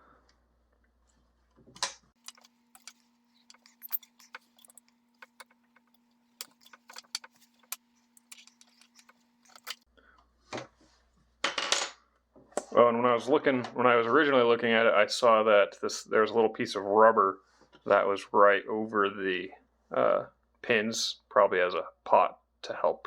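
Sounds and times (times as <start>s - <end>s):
wire strippers clicking: 2.2s - 9.8s.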